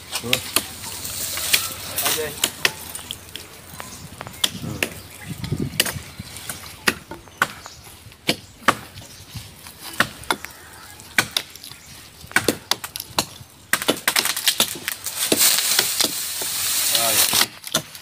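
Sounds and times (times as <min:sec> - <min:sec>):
axe chopping tree trunk: 0:02.2 - 0:02.8, 0:04.3 - 0:05.0, 0:05.7 - 0:09.1, 0:09.8 - 0:16.5, 0:17.3 - 0:18.0.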